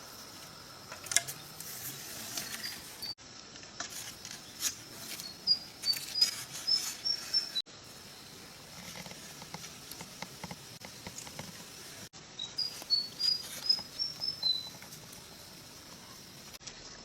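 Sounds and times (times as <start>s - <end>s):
outdoor background hiss: 0.0s - 17.0s
faint ticks and clicks: 8.7s - 11.9s
small animal chirping: 12.4s - 15.5s.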